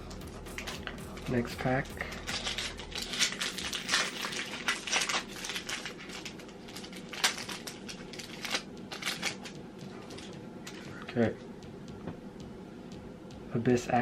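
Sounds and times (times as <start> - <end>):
foil wrapper crinkling: 0.5 - 10.8.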